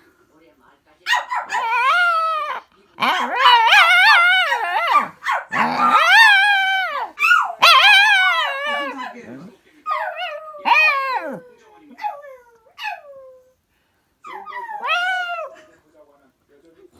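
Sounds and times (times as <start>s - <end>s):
puppy howling: 1.1s - 9.3s, 9.9s - 13.4s, 14.3s - 15.7s.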